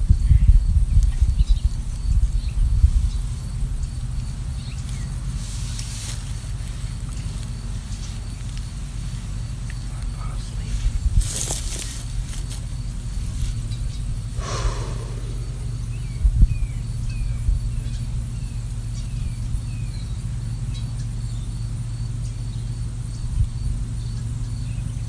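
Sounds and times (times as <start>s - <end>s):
steady low rumble: 14.3s - 17.4s
bird chirping: 14.4s - 16.2s
brief rushing noise: 14.4s - 16.3s.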